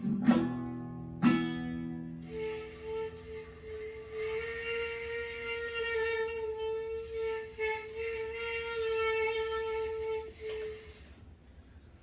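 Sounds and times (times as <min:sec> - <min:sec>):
instrument holding long note: 0:01.9 - 0:11.0.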